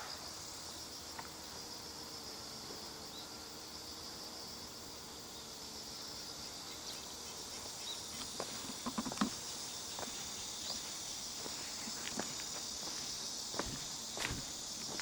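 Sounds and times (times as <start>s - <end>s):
insects chirring: 0.0s - 15.0s
footsteps on ground: 8.2s - 15.0s.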